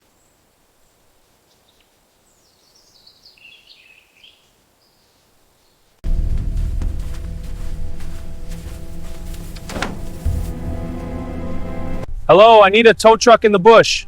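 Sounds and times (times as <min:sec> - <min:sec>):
bird singing: 0:01.5 - 0:05.9
loud music: 0:06.1 - 0:12.1.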